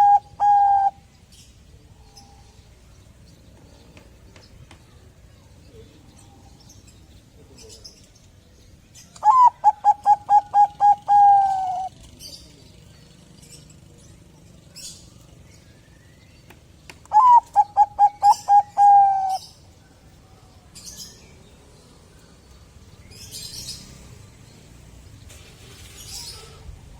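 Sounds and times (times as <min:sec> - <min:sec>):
zebra dove cooing: 0:00.0 - 0:01.1, 0:09.2 - 0:12.0, 0:17.1 - 0:19.5.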